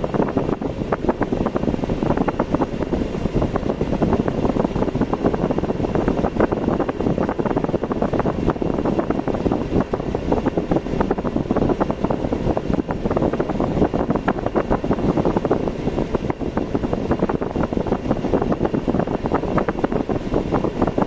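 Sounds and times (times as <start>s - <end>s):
vehicle travelling on road: 0.0s - 21.0s
wind buffeting microphone: 0.0s - 21.0s.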